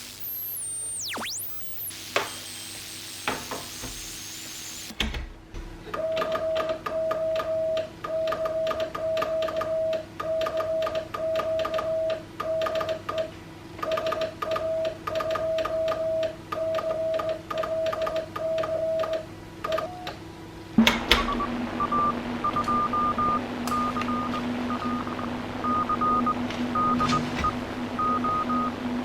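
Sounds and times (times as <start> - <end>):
faint steady hum: 18.8 - 29.0
morse code beeps: 21.1 - 28.8.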